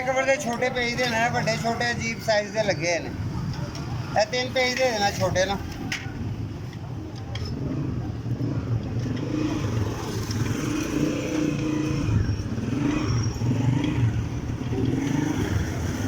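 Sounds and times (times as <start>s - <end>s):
motorcycle engine running: 8.5s - 16.0s.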